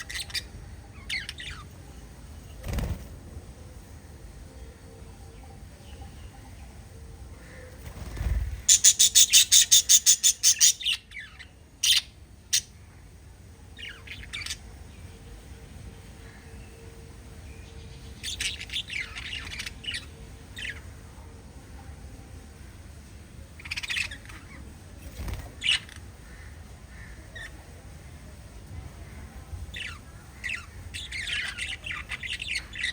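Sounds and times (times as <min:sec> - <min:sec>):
parrots chirping: 0:00.0 - 0:01.7, 0:08.6 - 0:12.7, 0:18.2 - 0:20.8, 0:23.6 - 0:24.6, 0:29.7 - 0:32.9
parrots squawking: 0:08.7 - 0:12.7.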